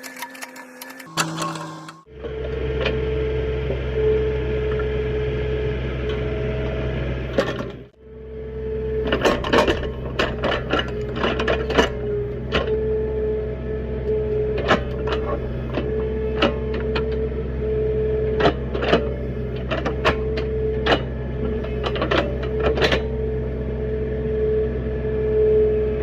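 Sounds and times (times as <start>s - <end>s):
shovel clanking and scraping: 0.0s - 2.1s
small engine running: 0.0s - 26.0s.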